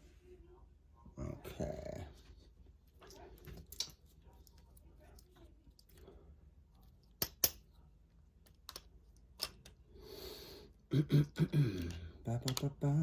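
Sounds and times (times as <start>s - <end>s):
padlock and tools clicking: 7.0s - 7.7s.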